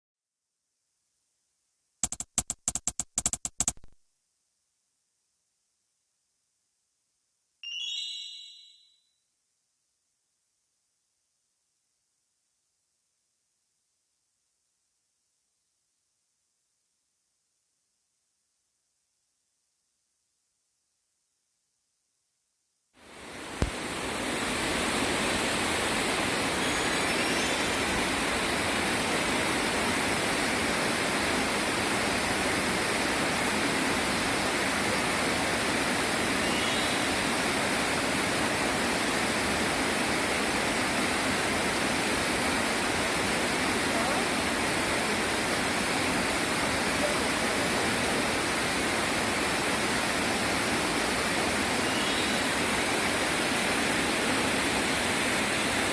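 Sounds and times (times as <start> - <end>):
waterfall rushing: 23.0 - 55.9.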